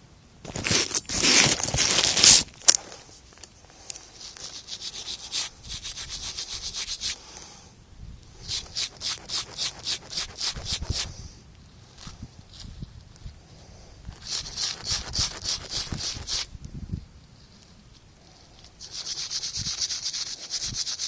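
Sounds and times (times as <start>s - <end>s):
cloth rubbing over microphone: 0.5s - 2.5s.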